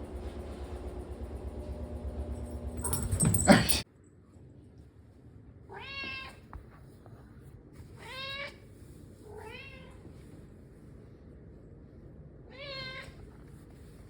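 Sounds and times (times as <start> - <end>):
cat meowing: 5.7 - 6.4, 12.5 - 13.2.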